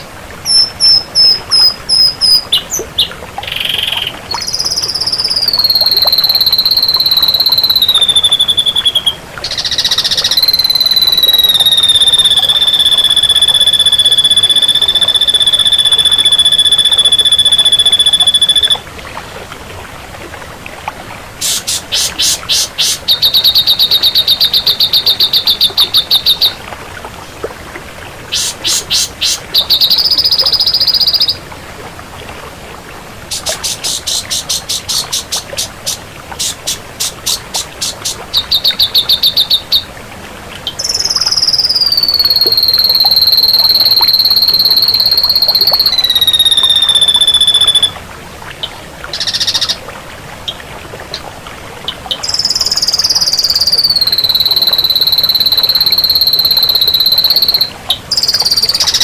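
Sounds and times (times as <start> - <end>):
bird singing: 0.0 - 18.8, 21.4 - 26.6, 28.3 - 31.4, 33.3 - 39.9, 40.7 - 48.0, 49.2 - 49.8, 52.2 - 59.0
bird whistles: 0.0 - 18.8, 21.4 - 26.6, 28.3 - 31.4, 33.3 - 39.9, 40.7 - 48.0, 49.2 - 49.8, 52.2 - 59.0
bird rattling trills: 21.4 - 26.6, 28.3 - 31.4, 33.3 - 39.8, 44.5 - 47.9.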